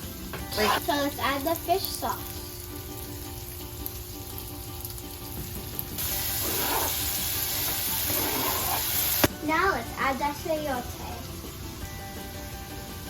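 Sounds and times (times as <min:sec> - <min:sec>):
food sizzling in a frying pan: 0:00.0 - 0:13.0.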